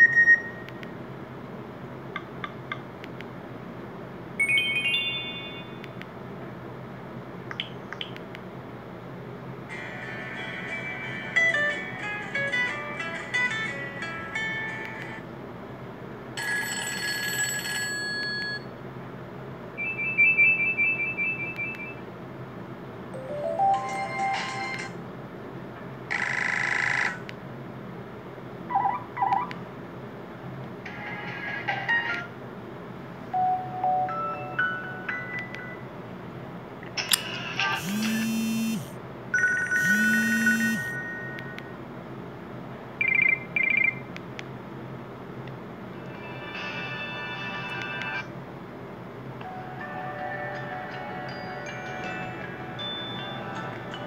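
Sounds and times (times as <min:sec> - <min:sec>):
phone ringtone chime: 0:04.4 - 0:05.8, 0:23.2 - 0:24.9, 0:37.8 - 0:41.4
trilling phone ring: 0:16.4 - 0:18.7, 0:37.8 - 0:41.4
short pulsed beeps: 0:37.8 - 0:38.9, 0:39.8 - 0:41.0
low buzz: 0:37.8 - 0:39.0, 0:39.8 - 0:40.9.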